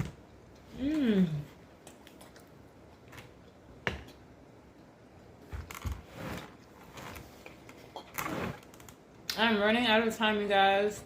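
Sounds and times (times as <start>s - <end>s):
chewing with wet mouth noises: 1.8s - 3.7s.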